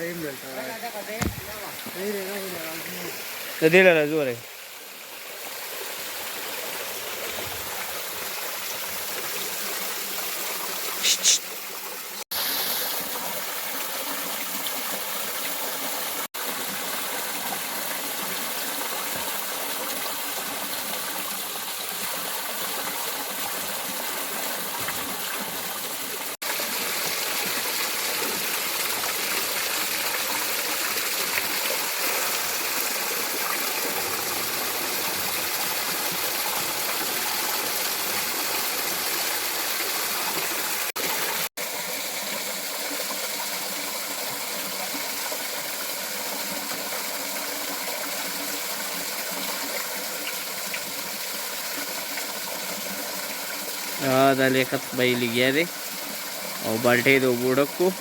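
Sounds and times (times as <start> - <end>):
stream water rushing: 0.0 - 58.0
sharp high-pitched sound: 11.0 - 11.5.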